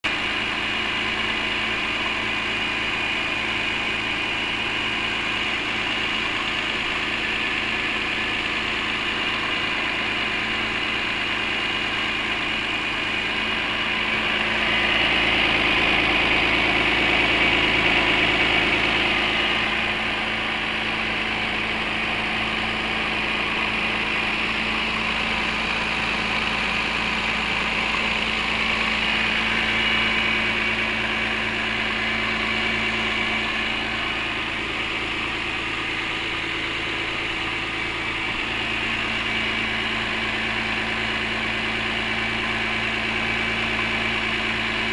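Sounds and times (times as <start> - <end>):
engine idling: 0.0 - 44.9.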